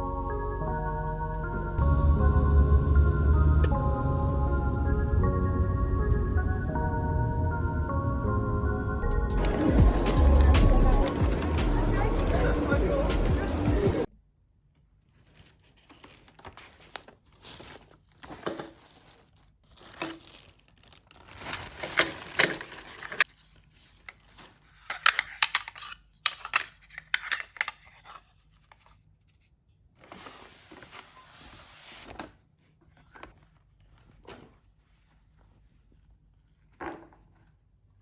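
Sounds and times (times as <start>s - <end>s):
packaging crinkling and tearing: 15.1s - 25.9s.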